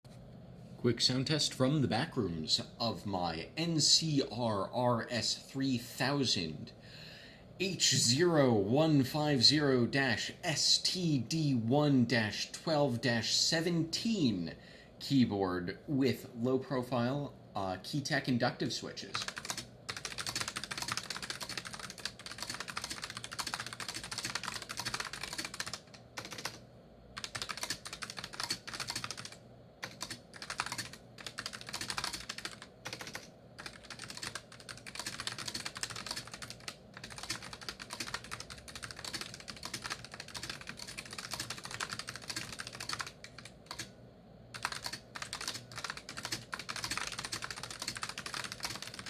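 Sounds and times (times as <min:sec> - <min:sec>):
rapid keyboard typing: 0:18.9 - 0:26.6, 0:27.2 - 0:43.9, 0:44.5 - 0:49.0.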